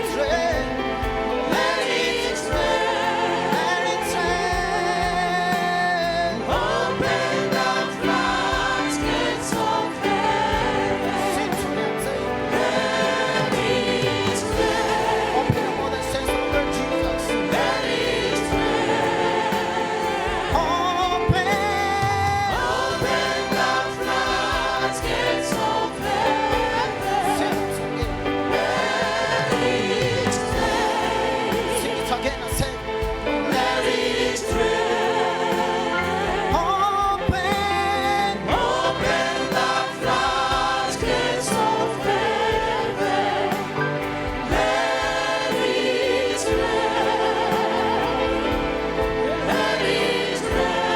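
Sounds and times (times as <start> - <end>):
choir singing gospel: 0.0 - 50.9
instrumental backing with beat: 0.0 - 50.9.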